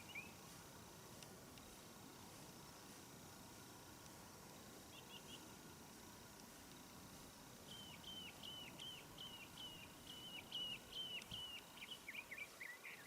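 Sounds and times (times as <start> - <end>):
bird singing: 0.0 - 0.4, 4.9 - 5.6, 7.7 - 13.0
steady low hiss: 0.0 - 13.0.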